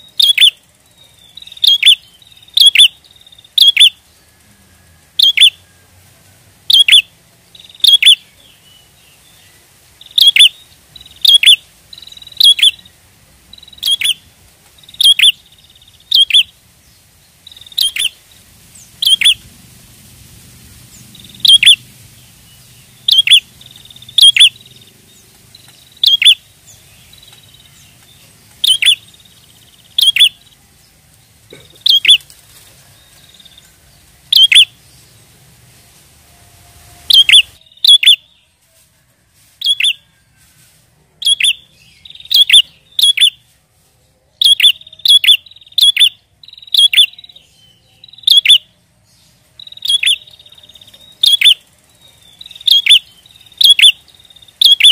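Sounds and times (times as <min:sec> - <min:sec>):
bird chirping sharply: 0:00.0 - 0:04.0, 0:05.2 - 0:05.7, 0:06.7 - 0:16.6, 0:17.5 - 0:18.2, 0:18.8 - 0:19.5, 0:20.9 - 0:30.6, 0:31.8 - 0:32.3, 0:34.3 - 0:35.2, 0:37.0 - 0:38.4, 0:39.6 - 0:40.0, 0:41.2 - 0:43.4, 0:44.4 - 0:54.9.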